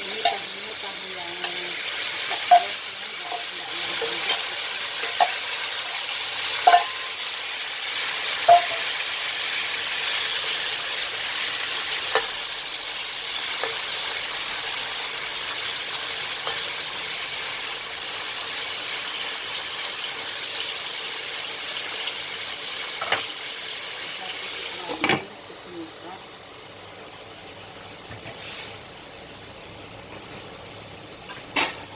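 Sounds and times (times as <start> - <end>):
food sizzling in hot oil: 0.0 - 31.9
spatula clinking against pan: 0.2 - 0.5, 2.2 - 5.6, 6.5 - 7.2, 8.4 - 9.0.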